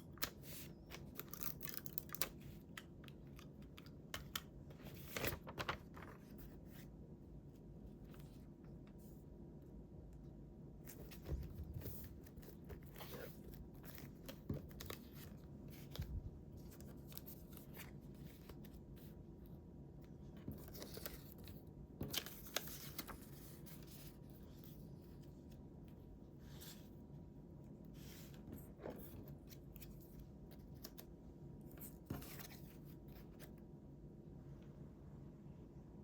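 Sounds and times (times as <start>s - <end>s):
paper rustling: 3.4s - 6.9s, 20.4s - 25.2s.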